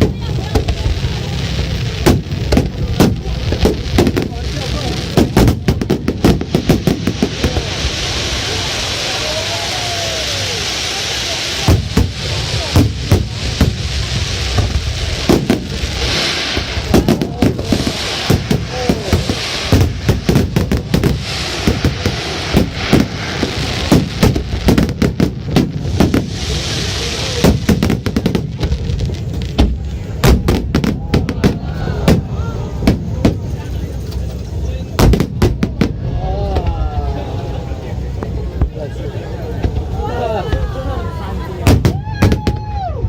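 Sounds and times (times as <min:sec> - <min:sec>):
crackling hiss: 0:00.0 - 0:42.9
firecrackers banging: 0:00.0 - 0:43.0.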